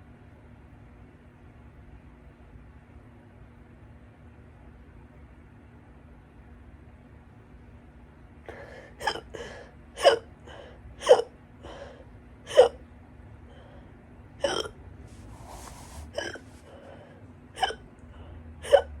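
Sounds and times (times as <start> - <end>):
woman hiccupping: 9.0 - 10.3, 11.0 - 11.3, 12.5 - 12.8, 14.4 - 14.8, 15.4 - 16.8, 17.6 - 17.8, 18.6 - 19.0
breathy hiss: 15.1 - 17.1.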